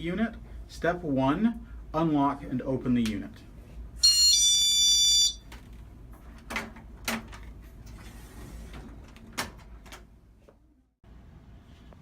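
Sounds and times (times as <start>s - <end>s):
high-pitched electronic alarm tone: 4.0s - 5.4s.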